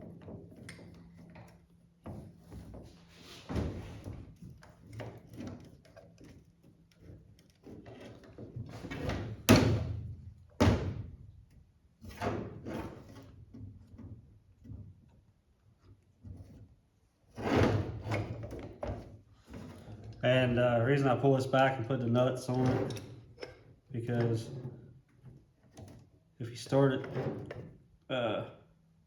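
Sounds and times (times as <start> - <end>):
tools clunking and scraping: 22.4 - 26.2, 26.9 - 27.8.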